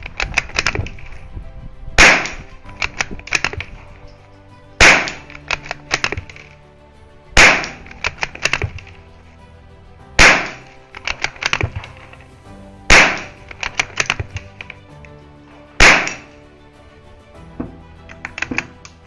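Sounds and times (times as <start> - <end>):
background music: 0.0 - 19.0.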